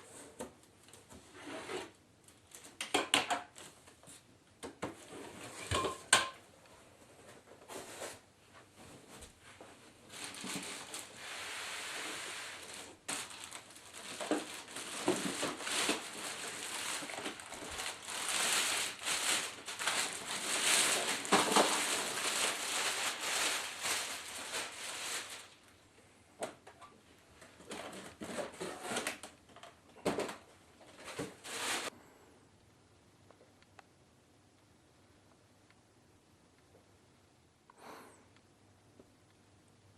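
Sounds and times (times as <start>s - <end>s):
plastic packaging crinkling: 10.1s - 11.3s, 12.0s - 25.7s, 30.9s - 31.9s.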